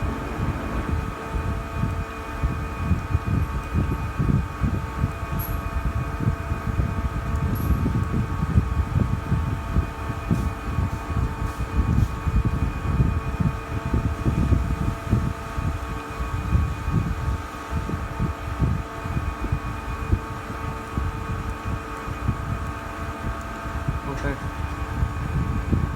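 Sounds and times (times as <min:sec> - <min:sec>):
low rumble on microphone: 0:00.0 - 0:25.9
machine hum: 0:00.0 - 0:25.9.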